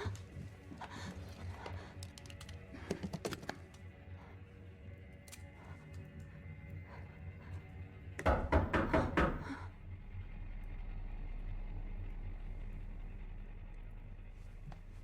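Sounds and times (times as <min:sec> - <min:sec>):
low film score drone: 0:00.0 - 0:15.0
heavy pounding on a door: 0:08.2 - 0:09.6.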